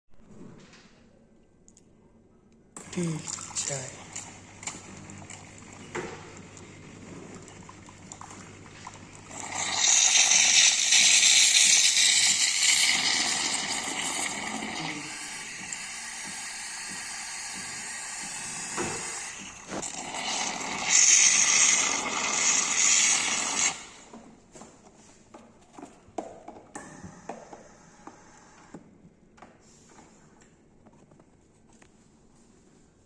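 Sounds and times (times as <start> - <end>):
hot-drink machine hissing: 2.8 - 24.1.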